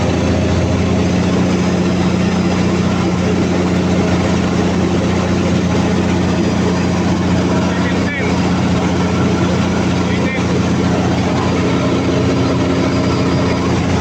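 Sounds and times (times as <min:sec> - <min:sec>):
diesel generator engine droning: 0:00.0 - 0:14.0.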